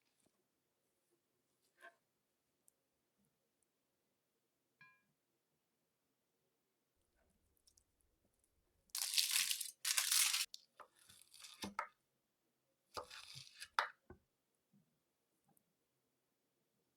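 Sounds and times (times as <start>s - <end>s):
crunching crisp food: 9.0s - 10.6s
clicks and scrapes: 13.0s - 13.9s.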